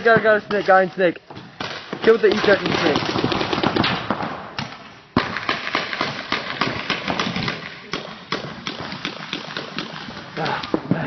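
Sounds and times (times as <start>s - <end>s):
paintball markers firing: 1.6s - 11.0s.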